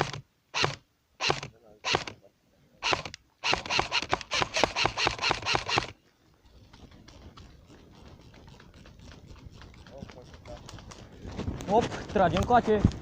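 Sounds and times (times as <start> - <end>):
airsoft gun full-auto burst: 0.0 - 2.1, 2.8 - 6.0
faint rustling and movement: 1.4 - 13.0.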